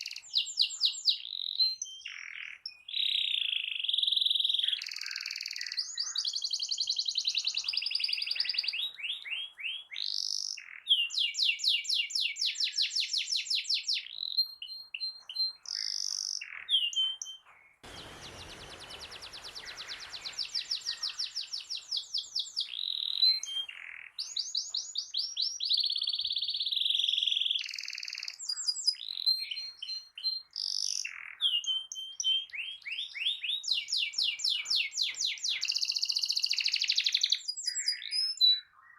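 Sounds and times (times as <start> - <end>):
canary singing trills: 0.0 - 38.9
hiss: 17.8 - 22.0.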